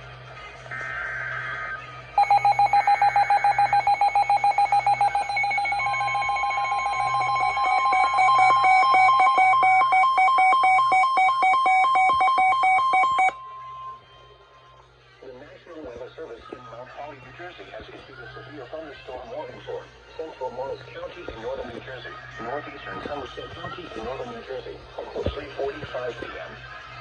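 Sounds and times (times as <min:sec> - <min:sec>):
rapid pulsing alert beep: 0:02.2 - 0:14.0
steady warning alarm tone: 0:02.2 - 0:14.1.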